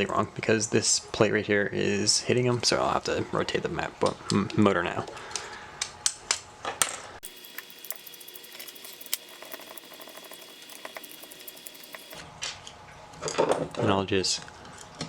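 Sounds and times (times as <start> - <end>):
hand tools clicking on metal: 7.2 - 12.2.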